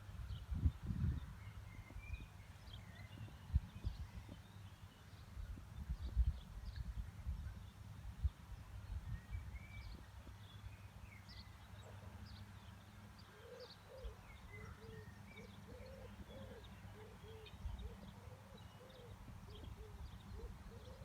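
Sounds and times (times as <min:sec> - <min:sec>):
wind rumble: 0:00.0 - 0:01.4
small birds chirping: 0:00.0 - 0:21.0
low cooing bird calls: 0:13.2 - 0:21.0.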